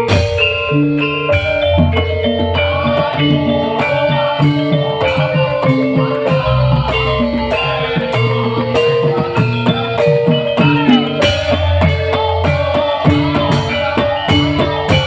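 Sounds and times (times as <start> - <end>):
drums keeping a beat: 0.0 - 15.0
live band instrumental music: 0.0 - 15.0.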